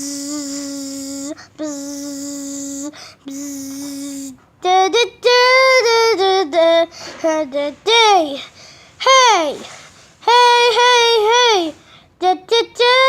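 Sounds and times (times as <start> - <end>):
child imitating a horn: 0.0 - 4.2
child singing da notes: 0.0 - 13.0.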